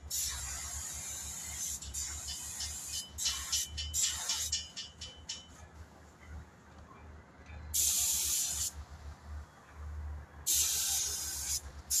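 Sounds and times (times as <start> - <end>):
hissing spray: 7.8 - 8.7, 10.5 - 12.0.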